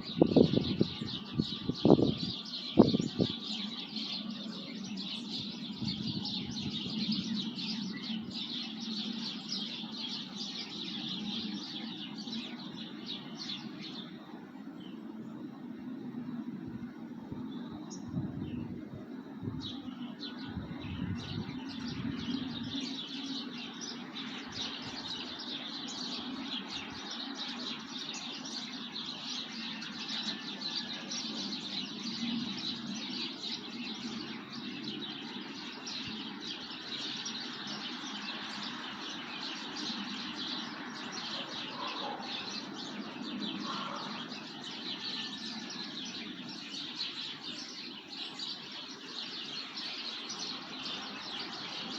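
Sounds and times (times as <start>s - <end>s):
small birds chirping: 0.0s - 51.9s
wind thumps on microphone: 0.1s - 3.4s.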